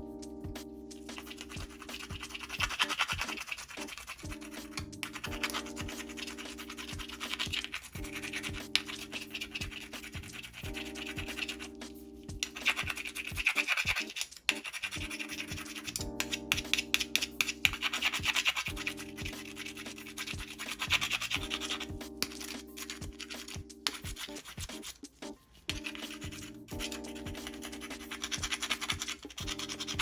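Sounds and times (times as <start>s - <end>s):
background music: 0.0s - 30.0s
mussel shells being scrubbed: 1.2s - 11.8s, 12.4s - 30.0s.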